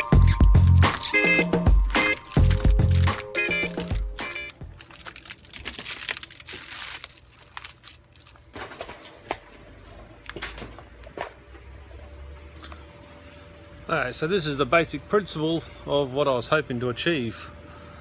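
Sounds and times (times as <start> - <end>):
material crinkling and rustling: 1.8 - 9.6.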